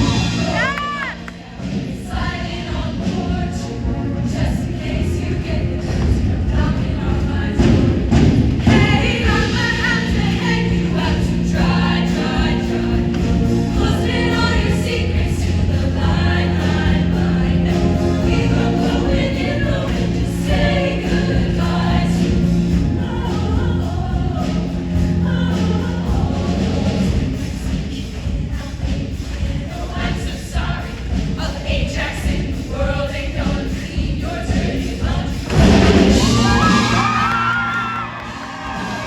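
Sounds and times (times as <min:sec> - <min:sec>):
sustained bass line: 0:00.0 - 0:01.0, 0:02.8 - 0:27.4, 0:35.5 - 0:39.0
instrumental accompaniment: 0:00.0 - 0:28.4
choir singing: 0:00.0 - 0:39.0.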